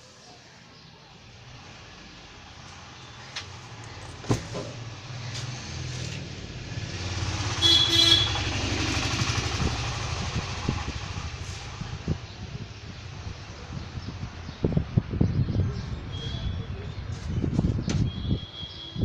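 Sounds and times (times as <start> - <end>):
vehicle engine passing: 1.4 - 13.8
car horn toots: 7.6 - 8.4.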